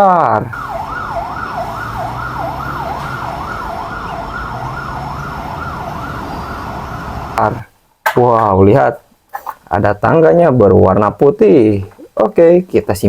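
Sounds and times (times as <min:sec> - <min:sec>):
toy siren wailing: 0:00.5 - 0:07.4.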